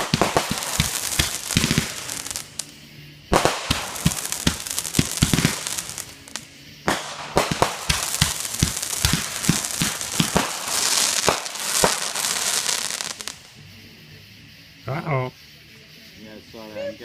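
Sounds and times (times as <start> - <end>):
firework pops and crackling: 0.0 - 13.6.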